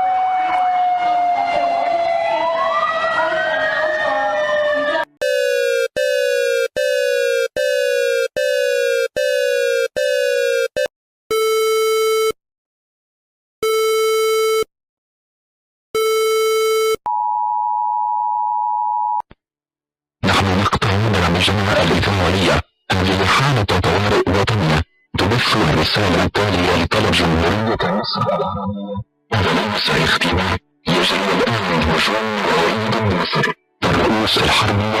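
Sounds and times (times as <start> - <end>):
long buzzy alert tones: 5.2 - 12.4.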